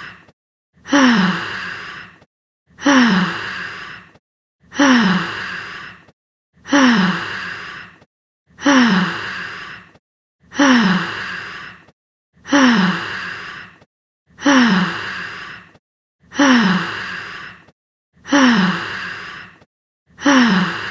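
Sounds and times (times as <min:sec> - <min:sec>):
breathy voiced sigh: 0:08.6 - 0:09.9.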